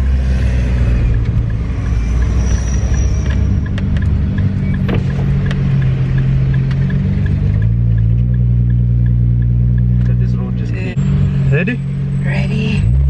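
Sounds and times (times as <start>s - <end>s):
car engine running at low revs: 0.0s - 13.0s
faint regular ticking: 3.4s - 10.6s.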